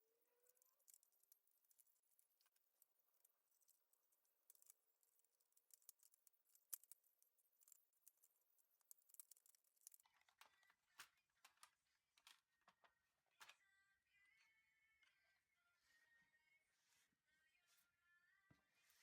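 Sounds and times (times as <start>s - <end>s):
clicks of small hard parts handled: 4.5s - 12.8s.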